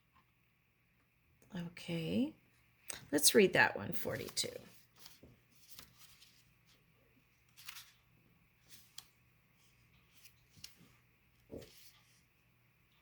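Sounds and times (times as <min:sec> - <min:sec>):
paper rustling: 0:04.0 - 0:12.3.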